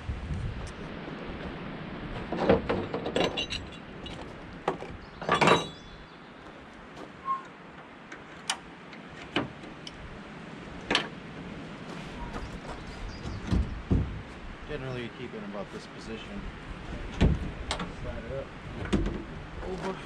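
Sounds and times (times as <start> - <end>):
tailgate hardware knocks and clinks: 2.3 - 5.8
metal clank: 2.4 - 4.3, 5.2 - 5.9.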